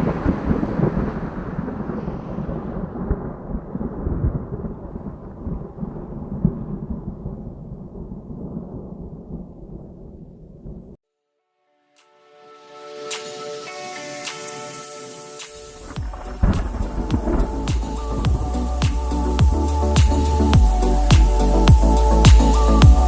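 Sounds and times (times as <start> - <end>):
rolling thunder: 0.0 - 11.0.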